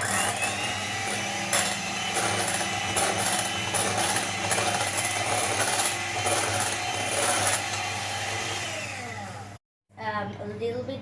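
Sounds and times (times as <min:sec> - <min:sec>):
electric mixer running: 0:00.0 - 0:09.6.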